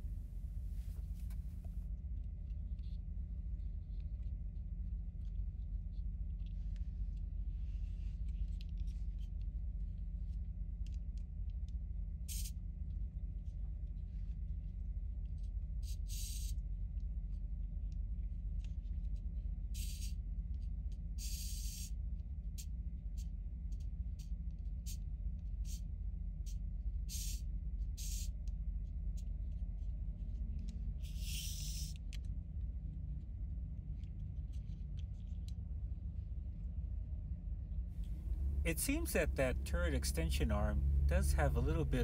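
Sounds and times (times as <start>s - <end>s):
steady low hum: 0.0s - 15.2s, 26.0s - 42.0s.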